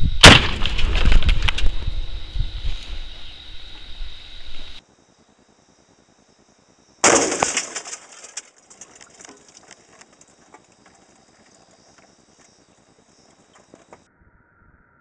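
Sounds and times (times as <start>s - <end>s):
shotgun shot: 0.2s - 1.2s, 7.0s - 7.8s
faint crackles: 7.3s - 14.0s.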